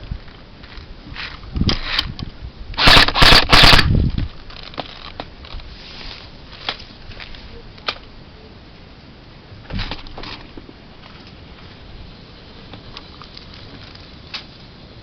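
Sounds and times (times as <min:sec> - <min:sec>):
clicks and rustling: 0:00.2 - 0:05.7
airsoft gun bursts: 0:02.8 - 0:03.9.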